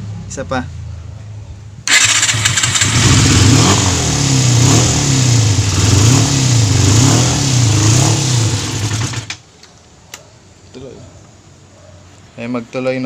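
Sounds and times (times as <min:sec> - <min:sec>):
motorcycle engine revving: 0:01.8 - 0:09.4.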